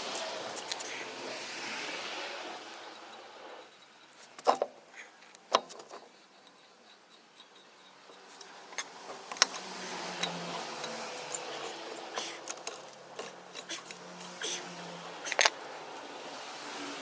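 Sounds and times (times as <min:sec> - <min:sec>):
tools rattling: 0:02.8 - 0:15.6
metal clinks and knocks: 0:03.0 - 0:14.4.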